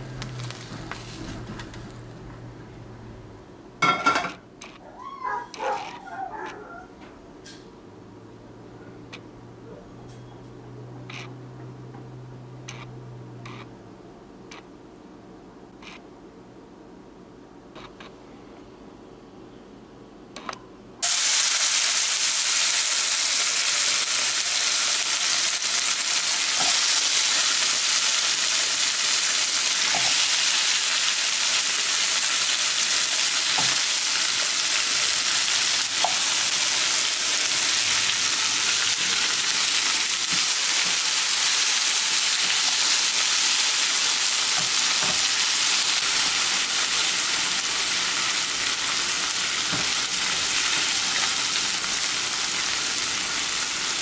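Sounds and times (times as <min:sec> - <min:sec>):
blender whirring: 0:21.0 - 0:53.8.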